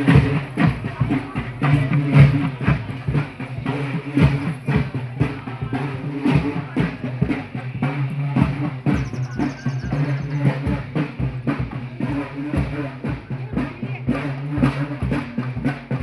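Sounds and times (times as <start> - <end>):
loud music with drumming: 0.0 - 16.0.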